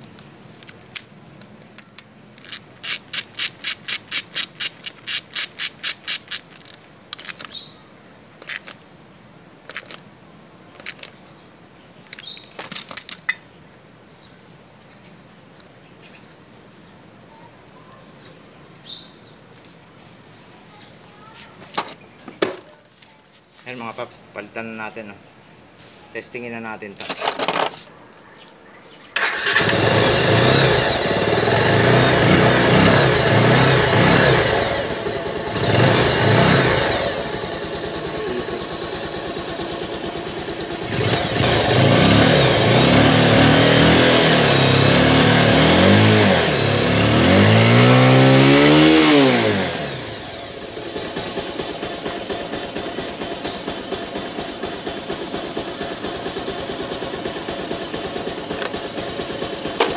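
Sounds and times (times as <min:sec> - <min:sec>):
motorcycle engine revving: 0:29.2 - 0:59.9.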